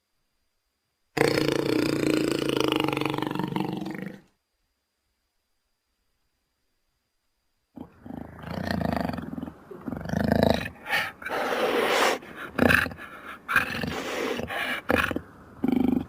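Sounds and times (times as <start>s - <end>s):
jaguar growling and snarling: 1.2s - 4.3s, 7.8s - 16.0s.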